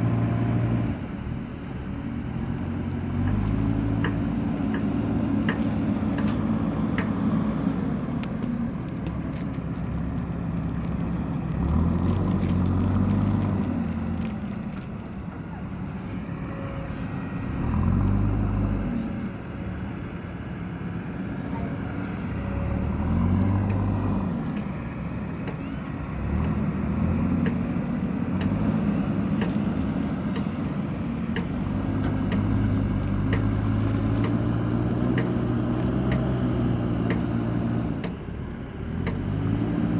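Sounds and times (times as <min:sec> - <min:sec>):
diesel engine working under load: 0:00.0 - 0:39.9.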